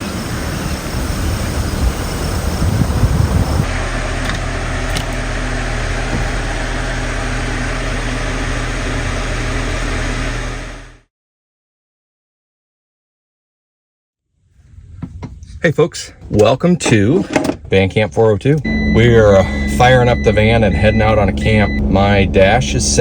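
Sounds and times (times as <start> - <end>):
vehicle engine and road noise: 0.0 - 11.0, 16.0 - 23.0.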